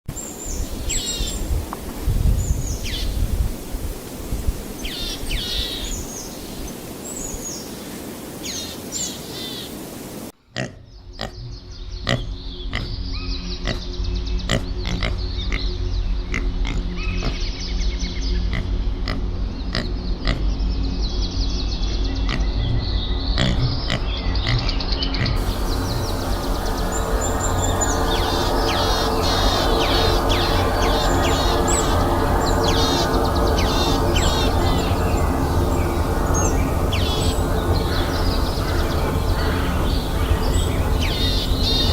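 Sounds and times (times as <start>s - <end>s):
drone of held tones: 25.4s - 41.9s
high bird chirps: 25.4s - 41.9s.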